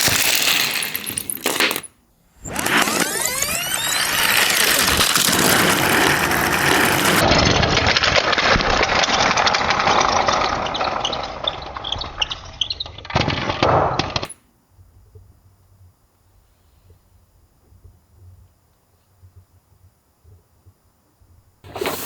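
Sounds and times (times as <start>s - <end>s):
toy vehicles clattering: 0.0s - 1.9s, 2.6s - 12.3s.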